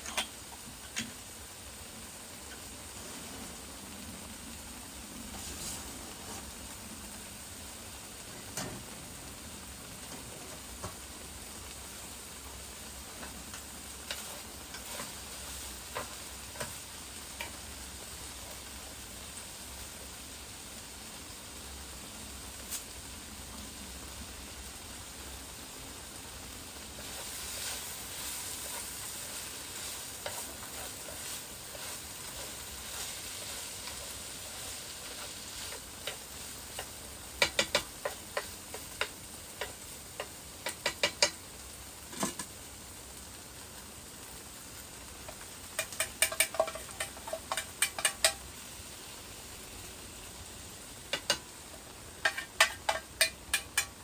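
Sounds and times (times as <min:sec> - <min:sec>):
food sizzling in a pan: 0:00.0 - 0:54.0
utensil clinking against pan: 0:36.8 - 0:41.4, 0:45.8 - 0:48.4, 0:52.2 - 0:54.0.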